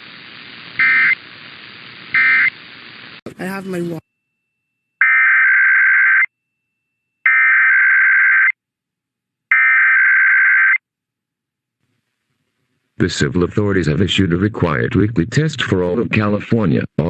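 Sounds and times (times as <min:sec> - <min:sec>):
digital data tone bursts: 0:00.8 - 0:01.2, 0:02.1 - 0:02.6.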